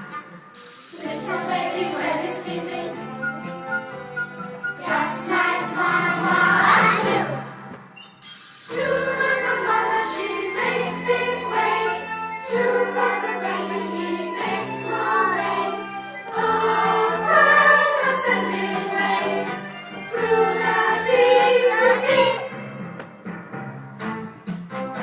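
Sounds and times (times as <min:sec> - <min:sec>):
children singing: 0:01.0 - 0:03.2, 0:04.8 - 0:07.5, 0:08.7 - 0:22.5.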